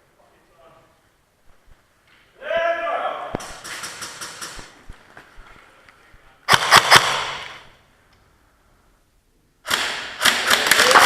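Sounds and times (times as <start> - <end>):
airsoft guns firing: 3.4 - 4.8, 6.5 - 7.7, 9.6 - 11.0.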